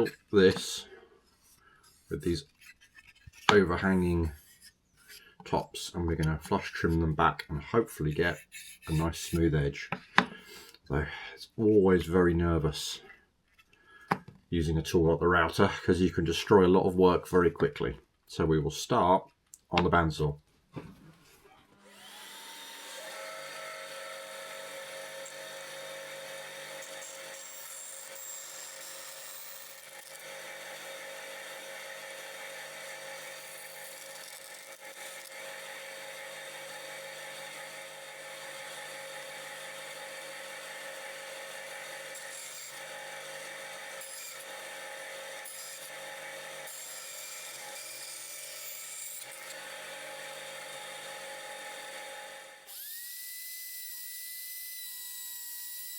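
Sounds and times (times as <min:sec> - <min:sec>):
bandsaw blade cutting wood: 0:01.4 - 0:05.3, 0:08.1 - 0:09.5, 0:21.9 - 0:55.9
bandsaw running: 0:21.8 - 0:51.2.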